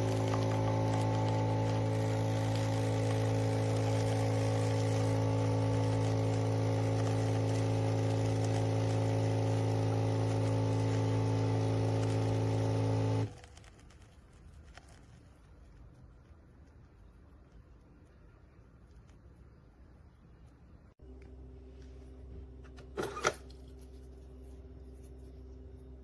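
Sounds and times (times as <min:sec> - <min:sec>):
coffee machine pump humming: 0:00.0 - 0:13.7, 0:21.0 - 0:26.0.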